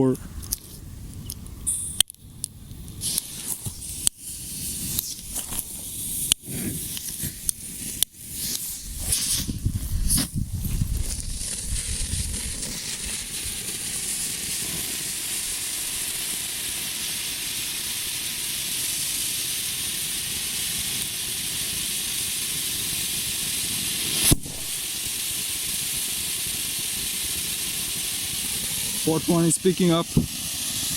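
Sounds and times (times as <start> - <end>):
firework fountains hissing: 0.0 - 30.9
sharp pop: 24.2 - 24.9, 30.1 - 30.4.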